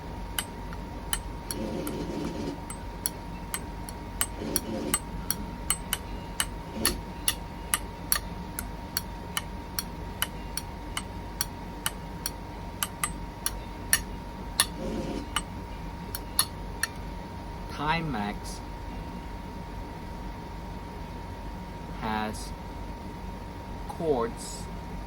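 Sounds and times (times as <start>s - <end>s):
faint high-pitched hum: 0.0s - 25.0s
sharp regular ticking: 2.6s - 15.5s.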